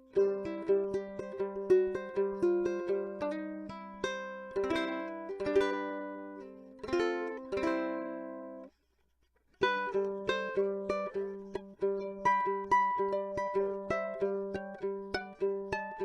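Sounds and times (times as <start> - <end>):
ukulele plucked notes and chords: 0.0 - 8.7, 9.6 - 16.0.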